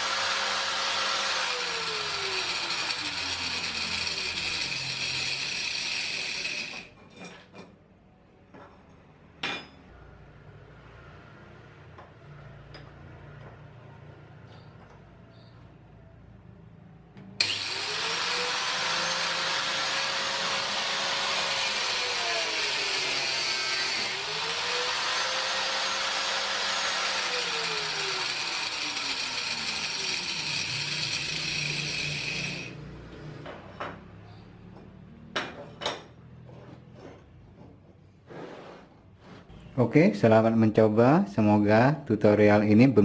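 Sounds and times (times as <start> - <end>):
angle grinder running: 0.0 - 6.9, 17.4 - 32.8.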